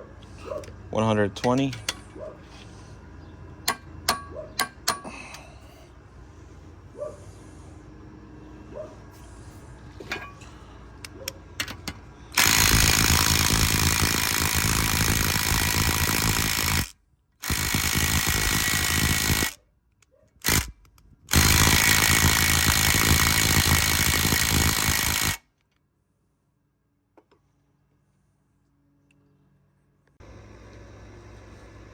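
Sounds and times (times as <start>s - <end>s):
impact driver hammering: 3.6s - 5.1s, 11.6s - 19.5s.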